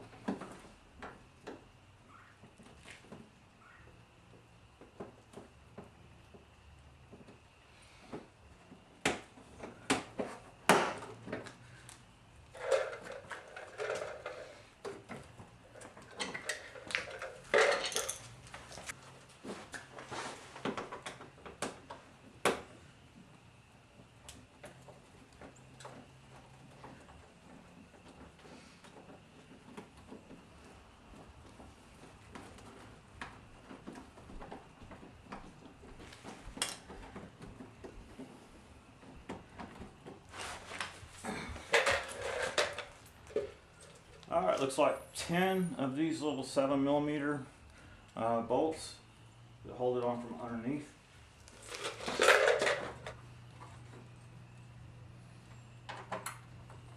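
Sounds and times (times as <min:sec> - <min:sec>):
tools rattling and scraping: 0:12.4 - 0:21.9, 0:24.6 - 0:44.4, 0:51.4 - 0:54.2.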